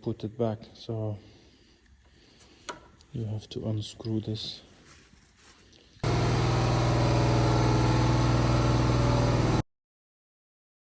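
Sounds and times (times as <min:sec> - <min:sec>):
diesel engine idling: 0:06.0 - 0:09.6.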